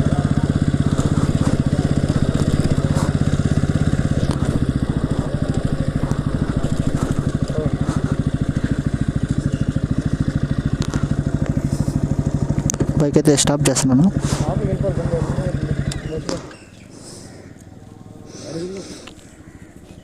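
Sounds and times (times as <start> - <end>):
motorcycle engine at low revs: 0.0 - 20.0.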